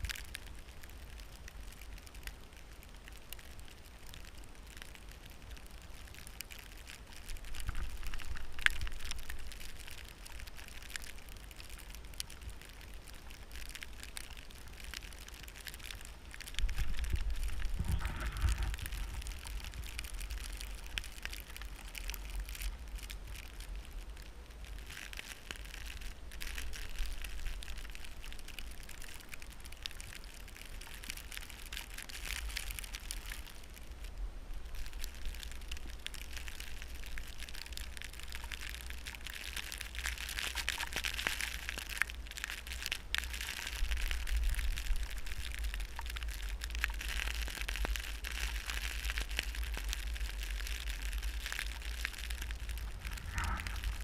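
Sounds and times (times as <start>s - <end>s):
wind buffeting microphone: 16.6s - 20.8s, 52.7s - 54.0s.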